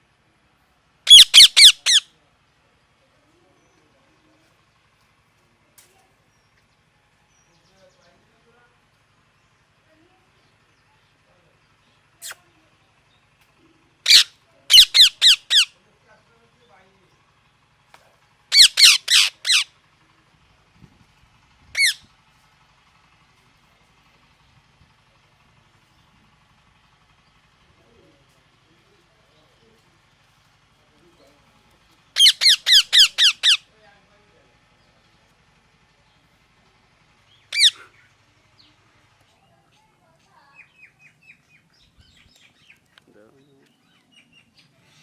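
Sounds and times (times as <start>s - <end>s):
parrot squawking harshly: 1.1s - 2.1s, 14.0s - 15.7s, 18.5s - 19.7s, 21.8s - 22.0s, 32.2s - 33.6s, 37.5s - 38.0s.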